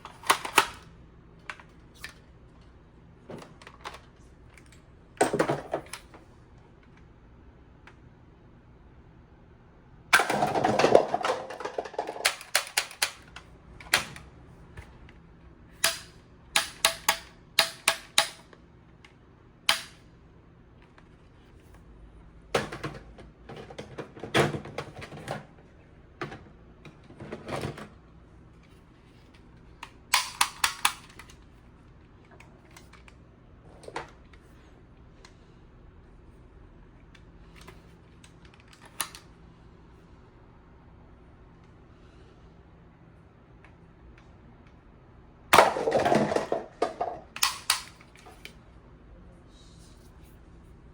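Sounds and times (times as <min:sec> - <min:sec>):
plastic toy gun rattle: 0:00.0 - 0:00.8, 0:10.2 - 0:13.3, 0:30.1 - 0:31.4, 0:45.6 - 0:48.5
plastic clicks and snaps: 0:47.4 - 0:48.6.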